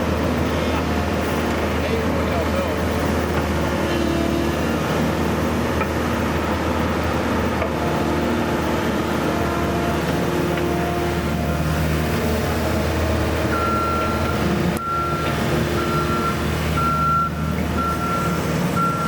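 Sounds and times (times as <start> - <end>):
excavator diesel engine running: 0.0 - 19.0.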